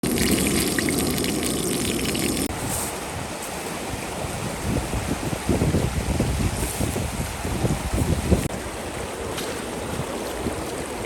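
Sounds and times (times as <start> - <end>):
rushing water: 0.0 - 11.0
wind buffeting microphone: 2.5 - 11.0.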